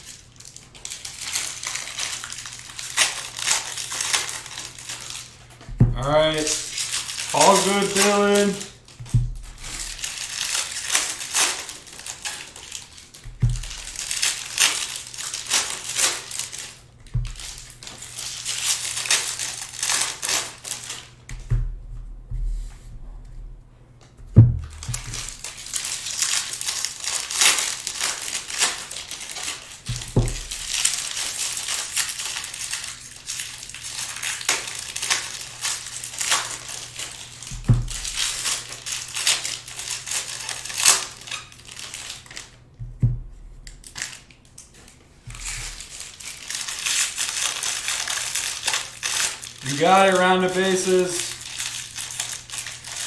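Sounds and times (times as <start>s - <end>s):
foil wrappers crinkling and tearing: 0.0s - 21.5s, 24.7s - 42.8s, 43.4s - 53.0s
dull knocks: 5.6s - 6.0s, 9.0s - 9.6s, 13.3s - 13.8s, 24.2s - 25.3s, 29.9s - 30.5s, 37.5s - 38.1s, 42.8s - 43.4s.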